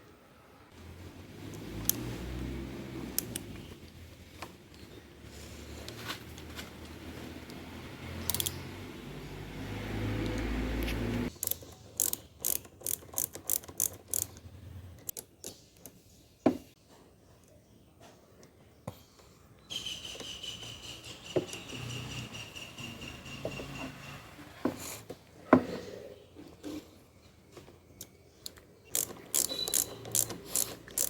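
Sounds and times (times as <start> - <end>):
sharp metallic clicks: 3.1 - 3.8, 8.2 - 8.6, 10.2 - 16.0, 28.0 - 31.0.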